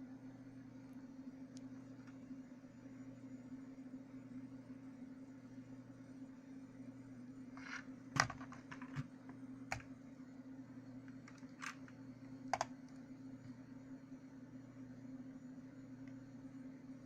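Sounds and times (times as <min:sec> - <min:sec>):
steady low hum: 0:00.0 - 0:17.0
keyboard key clicks: 0:12.5 - 0:12.8.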